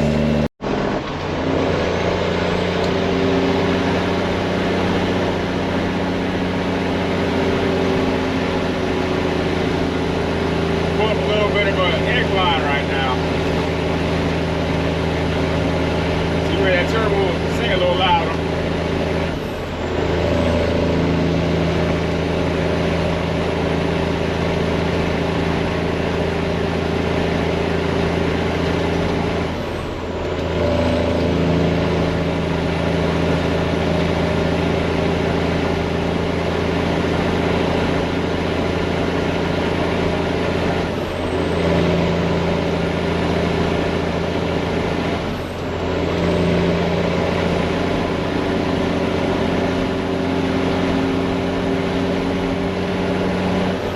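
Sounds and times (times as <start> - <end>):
truck engine pulling under load: 0.0 - 53.9.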